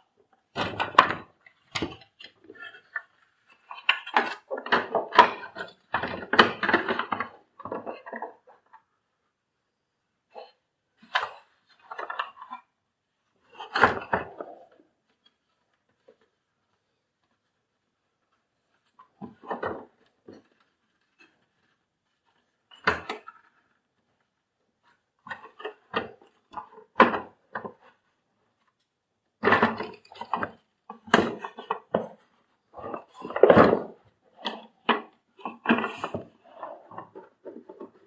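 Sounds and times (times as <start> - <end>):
plastic parts clicking and knocking: 0.5 - 8.9, 18.7 - 23.8, 24.8 - 38.0.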